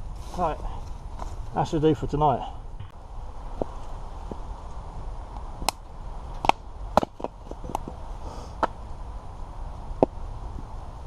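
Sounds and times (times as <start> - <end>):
wooden knocks of firewood: 6.4 - 8.0.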